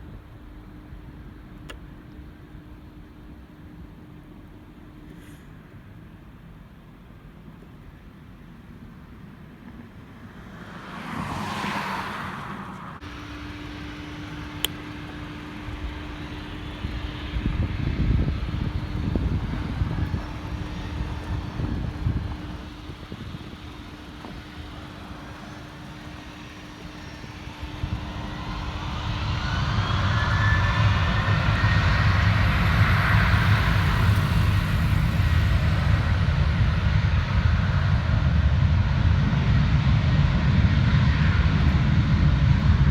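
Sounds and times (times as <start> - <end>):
jet engines rumbling: 0.0 - 42.9
rising jet whine: 10.0 - 42.9.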